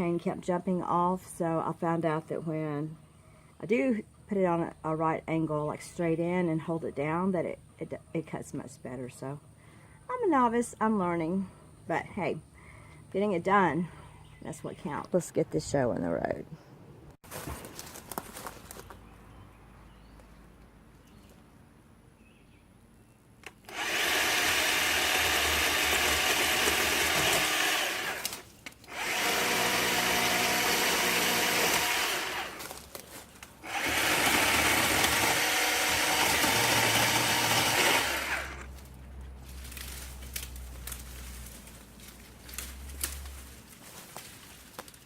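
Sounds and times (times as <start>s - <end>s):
electric chainsaw running: 23.5s - 32.8s, 33.6s - 38.8s.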